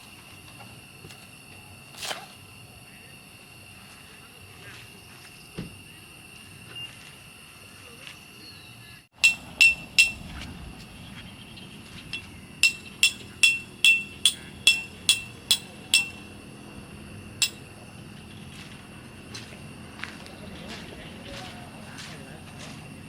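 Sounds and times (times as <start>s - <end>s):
hammer striking: 9.2s - 10.3s, 12.2s - 16.3s, 17.4s - 17.7s.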